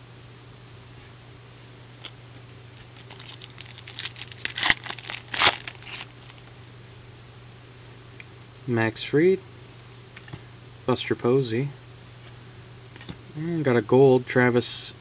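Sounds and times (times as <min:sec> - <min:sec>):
wrapper tearing and crinkling: 0:02.8 - 0:06.5.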